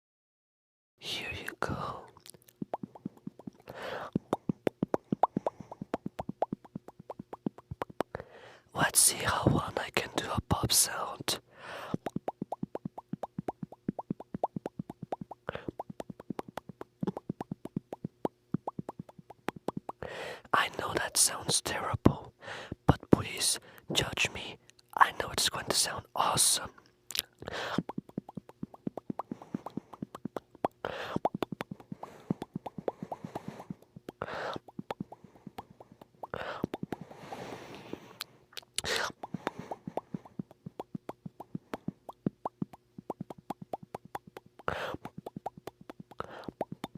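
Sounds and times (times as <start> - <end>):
mouth pops: 1.3 - 8.3, 11.6 - 22.2, 25.4 - 46.9
person breathing: 3.6 - 4.3, 5.3 - 6.0, 8.1 - 8.8, 11.5 - 12.1, 20.0 - 20.6, 22.4 - 22.8, 23.6 - 23.9, 27.4 - 27.9, 29.2 - 30.1, 30.8 - 40.5, 44.7 - 45.1, 46.2 - 46.6.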